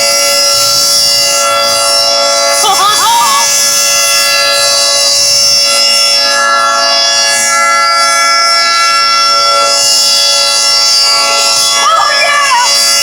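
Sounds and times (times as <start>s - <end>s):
two-tone warning siren: 0.0s - 13.0s.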